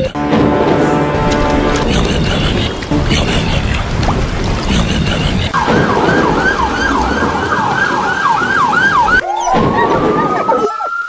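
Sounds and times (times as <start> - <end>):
siren yelping: 5.5 - 11.0.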